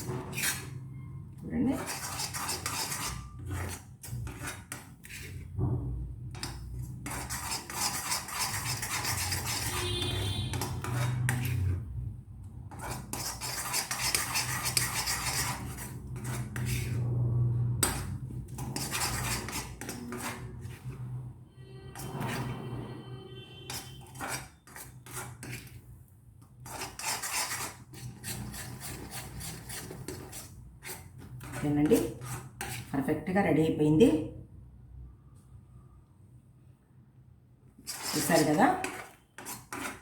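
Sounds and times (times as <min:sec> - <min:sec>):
spoon scraping a pan: 0:00.0 - 0:01.1, 0:01.7 - 0:05.5, 0:06.4 - 0:12.0, 0:12.7 - 0:17.2, 0:17.8 - 0:25.9, 0:26.6 - 0:32.9, 0:37.8 - 0:40.0.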